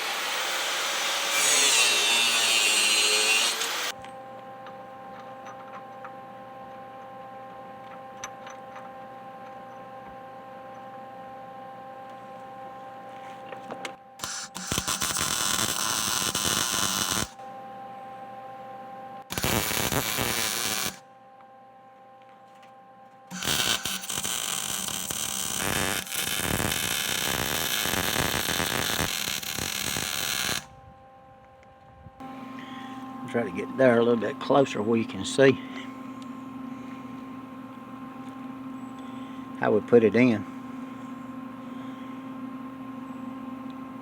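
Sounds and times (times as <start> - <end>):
steady hum: 3.1 - 44.0
crackling arc welding: 14.2 - 17.4, 19.3 - 21.0, 23.3 - 30.7.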